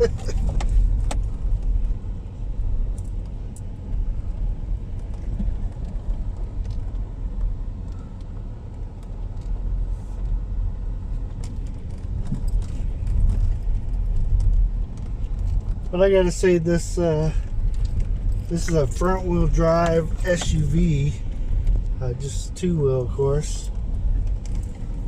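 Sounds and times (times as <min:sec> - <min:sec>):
engine and tyres rumbling: 0:00.0 - 0:25.0.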